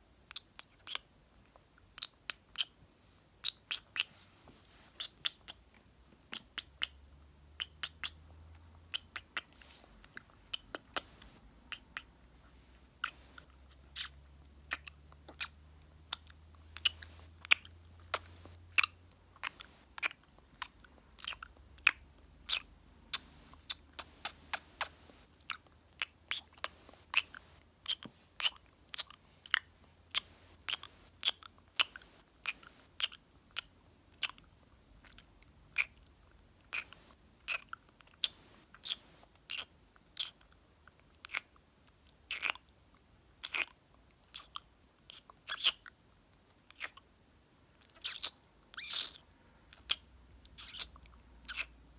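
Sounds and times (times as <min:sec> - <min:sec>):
wet mouth clicks and lip smacks: 0:08.9 - 0:12.1, 0:13.0 - 0:34.4, 0:36.7 - 0:40.5, 0:50.6 - 0:51.8.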